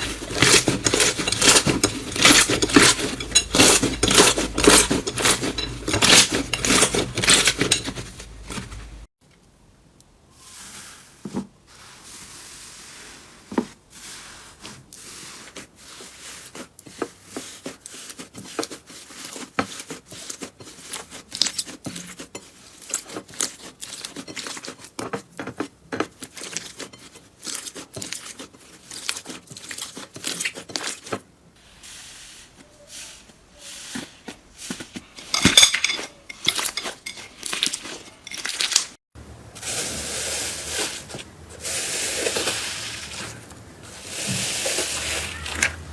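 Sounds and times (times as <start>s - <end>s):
soft hissy slime sound: 10.2s - 21.8s, 31.5s - 35.0s.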